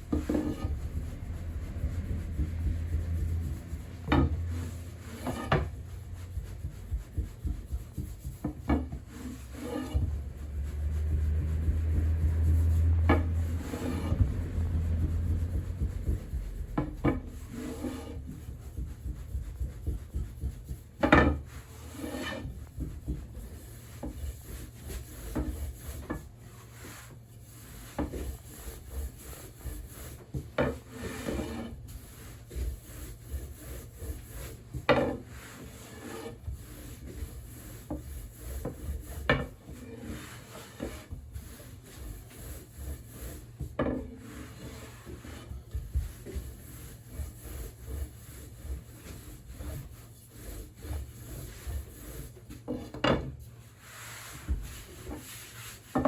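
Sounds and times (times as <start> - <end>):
low rumble: 0.0 - 4.9, 10.1 - 16.8
dough rubbing against wood: 0.0 - 56.0.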